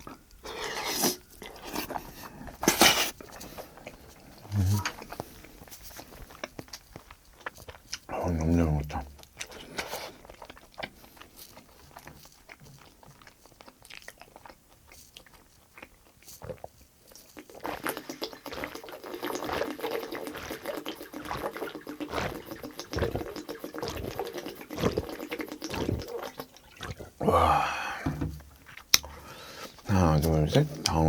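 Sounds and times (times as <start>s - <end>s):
chewing with small clicks: 3.2s - 27.2s.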